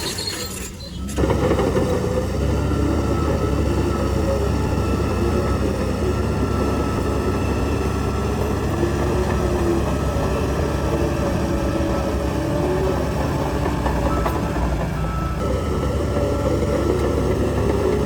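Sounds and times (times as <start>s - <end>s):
heavy diesel engine running: 0.0s - 18.0s
steel tracks clattering: 7.1s - 18.0s.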